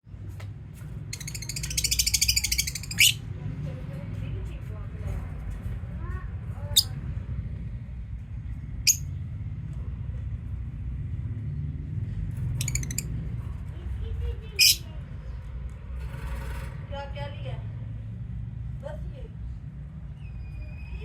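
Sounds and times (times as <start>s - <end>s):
lovebirds shrieking and chattering: 1.0s - 3.4s, 8.9s - 9.1s, 12.4s - 13.2s, 14.3s - 15.0s
steady low rumble: 2.0s - 15.9s.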